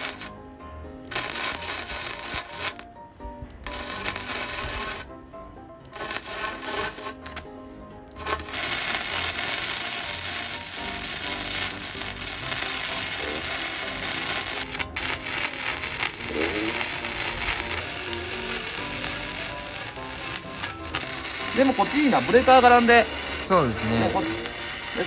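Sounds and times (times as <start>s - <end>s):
welder arc crackling: 0.0s - 0.4s, 1.1s - 2.8s, 3.6s - 5.1s, 5.9s - 7.5s, 8.2s - 25.0s
background music: 0.0s - 25.0s.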